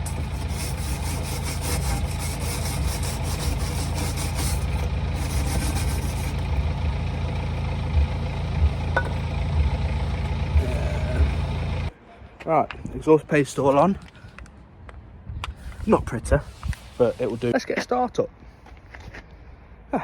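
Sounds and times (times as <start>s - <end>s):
wire brush scraping metal: 0.0s - 6.8s
engine idling: 0.0s - 11.9s.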